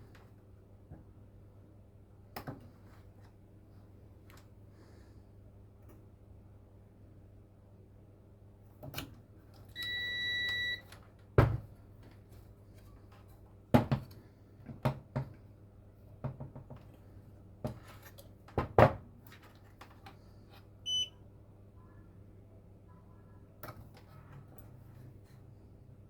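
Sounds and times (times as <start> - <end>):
multimeter beeping: 9.8 - 10.8, 20.9 - 21.2.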